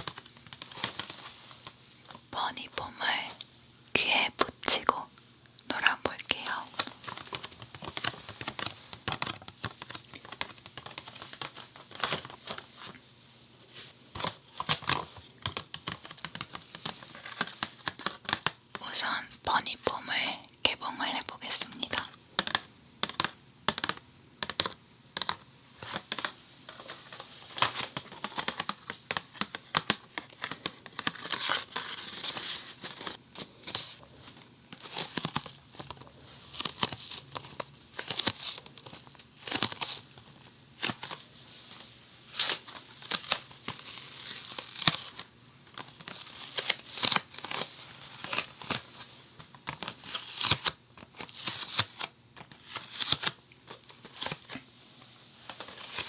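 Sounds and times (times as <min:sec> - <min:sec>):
packaging tearing and crinkling: 0:27.5 - 0:34.0, 0:34.8 - 0:41.2, 0:42.3 - 0:54.6.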